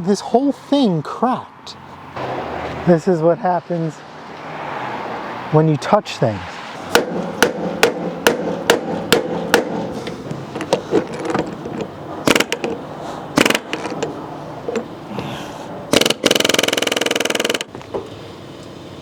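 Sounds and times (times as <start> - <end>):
hammer tapping on metal: 6.9 - 10.8
rapid metallic rattling: 6.9 - 15.0, 15.9 - 17.7.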